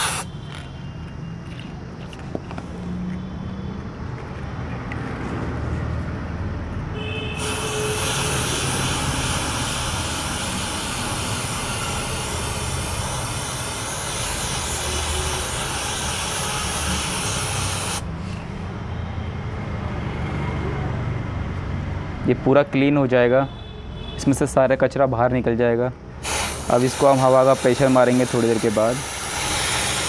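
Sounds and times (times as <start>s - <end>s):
aerosol spray hissing: 0.0s - 0.3s, 7.4s - 18.1s, 26.2s - 30.0s.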